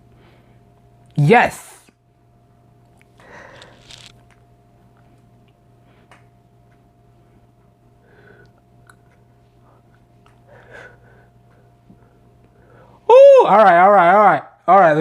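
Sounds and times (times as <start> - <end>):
steady low hum: 0.0 - 15.0
soft breath or rustle: 3.2 - 4.1.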